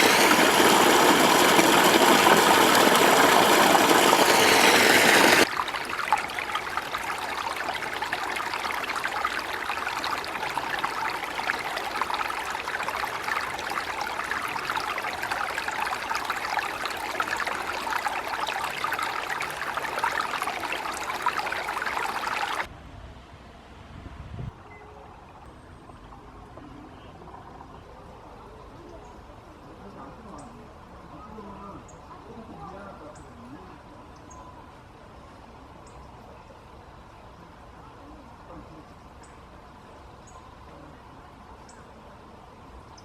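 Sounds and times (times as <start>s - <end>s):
stream trickling and splashing: 0.0s - 22.7s, 24.5s - 43.0s.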